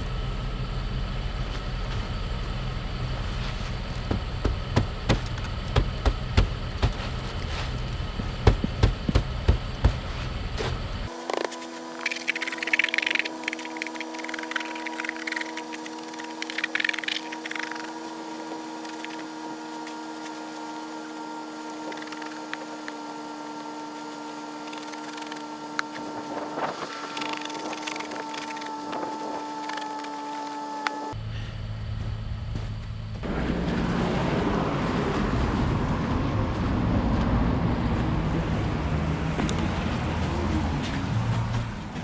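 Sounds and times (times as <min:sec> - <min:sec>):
steady mechanical hum: 0:00.0 - 0:42.0
noisy rustling: 0:11.1 - 0:31.2.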